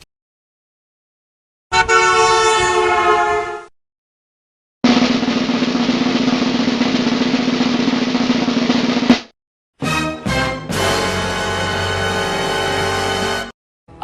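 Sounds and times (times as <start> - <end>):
held horn tone: 1.7 - 3.7, 10.6 - 13.5
snare drum roll: 4.8 - 9.3, 10.8 - 11.4.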